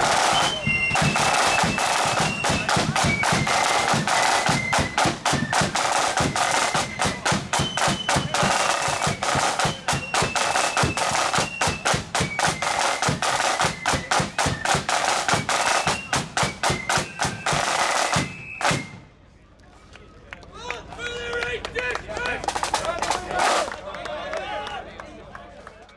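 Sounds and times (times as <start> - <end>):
high flute melody: 0.0 - 19.1
snare and bass drums: 0.0 - 19.2, 22.4 - 23.8.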